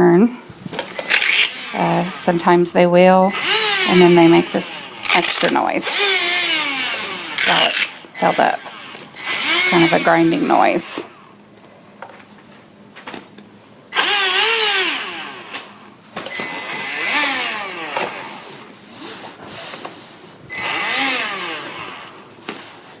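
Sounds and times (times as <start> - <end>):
grinding noise: 1.0 - 11.2, 13.9 - 18.6, 20.5 - 22.3
toy truck electric motor revving: 1.0 - 11.4, 13.9 - 18.6, 20.5 - 22.4.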